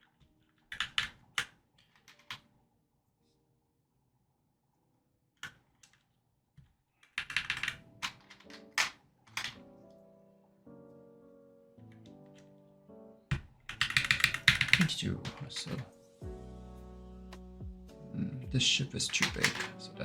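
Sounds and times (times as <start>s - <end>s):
plastic keycaps clicking: 7.0s - 9.6s, 13.3s - 15.9s, 19.1s - 19.8s.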